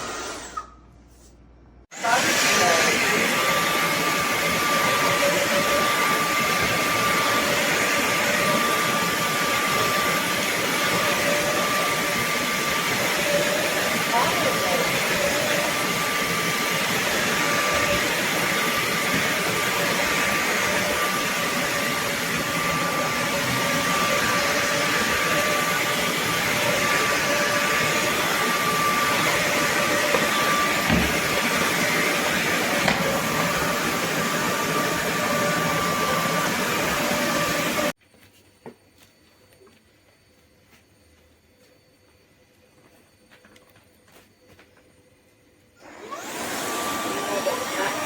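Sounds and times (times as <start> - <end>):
vacuum mop running: 1.9 - 38.0, 45.8 - 48.0.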